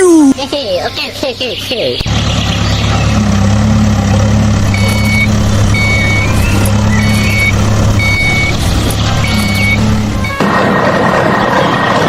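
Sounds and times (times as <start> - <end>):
engine humming: 0.0 - 12.0
reversing alarm beeping: 4.7 - 10.4.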